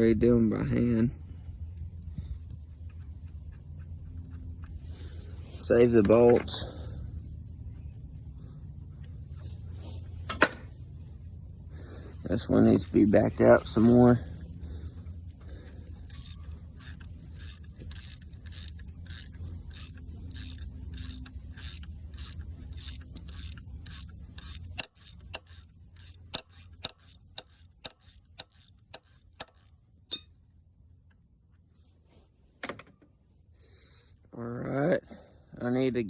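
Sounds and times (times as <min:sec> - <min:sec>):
low hum: 0:00.0 - 0:31.5
metal rattle: 0:15.0 - 0:30.4
ratchet wrench clicking: 0:15.0 - 0:30.4.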